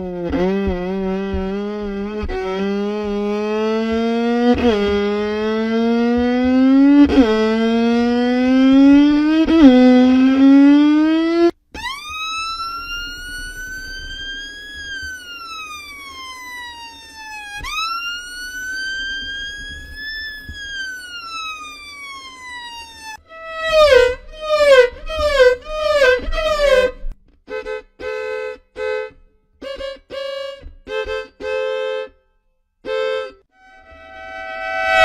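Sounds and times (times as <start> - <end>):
siren-like wailing tone: 3.4 - 27.1, 33.6 - 35.0.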